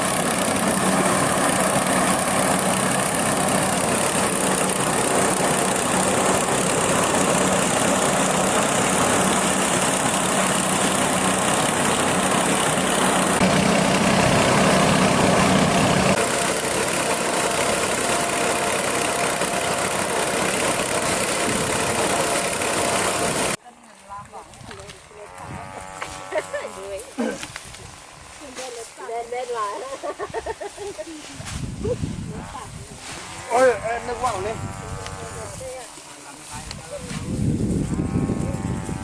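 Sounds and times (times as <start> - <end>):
small engine running: 0.0 - 23.6, 32.6 - 39.0.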